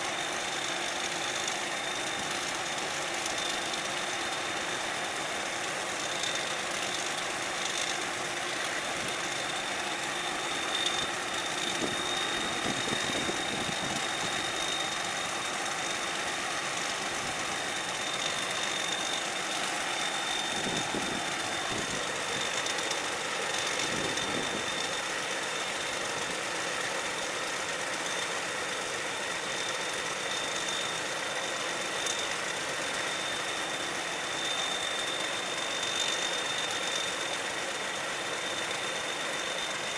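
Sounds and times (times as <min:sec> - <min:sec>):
diesel engine running: 0:00.1 - 0:36.5.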